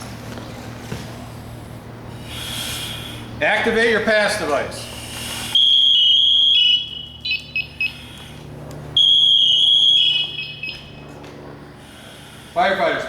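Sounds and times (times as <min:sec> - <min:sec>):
alarm chirps: 0:05.5 - 0:08.4, 0:09.0 - 0:11.2
high-pitched alarm tone: 0:05.6 - 0:08.2, 0:09.0 - 0:11.1.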